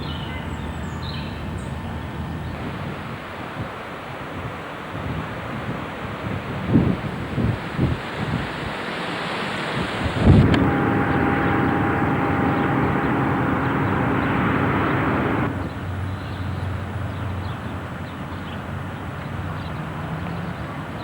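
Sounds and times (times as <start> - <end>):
engine hum: 9.8 - 18.1
held tones: 10.2 - 15.6.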